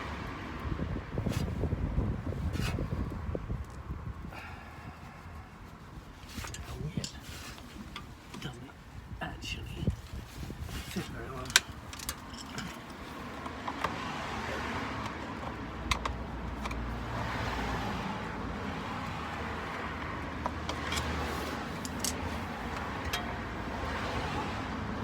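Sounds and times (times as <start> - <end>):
road traffic passing: 0.0 - 25.0
small parts clicking and rattling: 11.4 - 13.8, 20.6 - 23.4.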